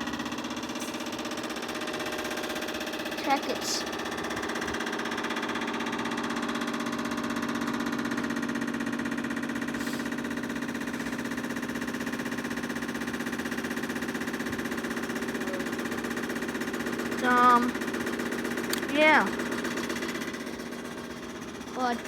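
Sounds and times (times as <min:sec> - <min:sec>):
lawn mower engine idling: 0:00.0 - 0:22.0.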